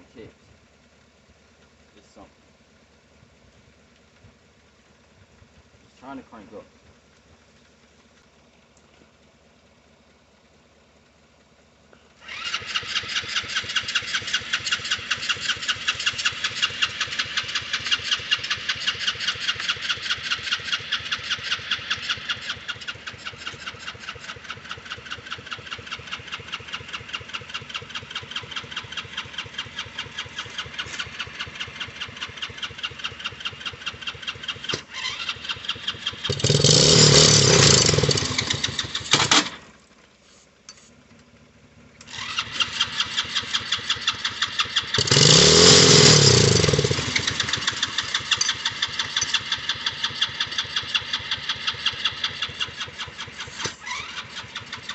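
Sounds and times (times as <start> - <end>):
electric starter cranking engine: 12.2 - 39.8, 42.0 - 54.9.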